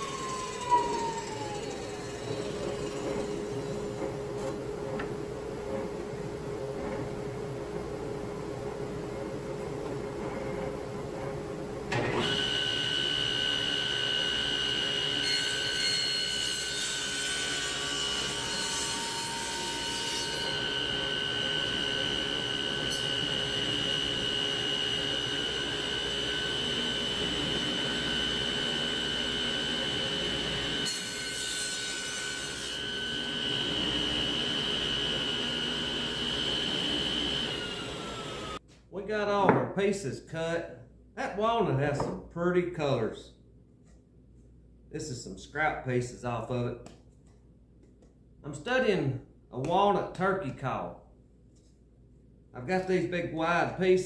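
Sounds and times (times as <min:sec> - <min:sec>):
power saw cutting wood: 0:00.0 - 0:05.1, 0:11.9 - 0:38.6.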